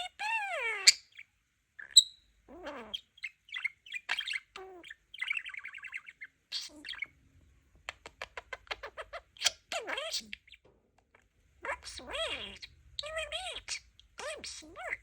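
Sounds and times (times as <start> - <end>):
budgie chattering and warbling: 1.8 - 7.1, 7.8 - 15.0.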